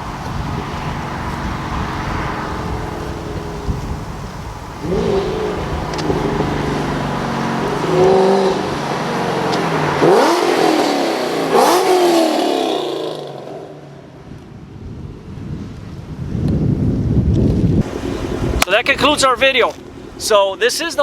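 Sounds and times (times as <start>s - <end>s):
car engine accelerating: 0.0s - 14.0s.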